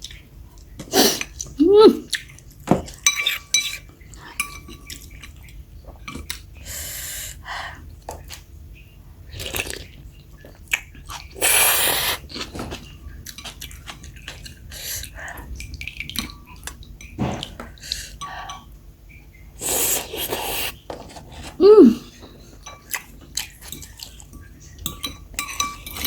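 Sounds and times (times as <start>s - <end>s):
spoon clinking against bowl: 3.0s - 5.1s, 23.7s - 26.0s
chewing and mouth noises: 9.4s - 16.8s, 22.7s - 24.8s
slurping: 11.2s - 12.5s, 19.6s - 22.0s.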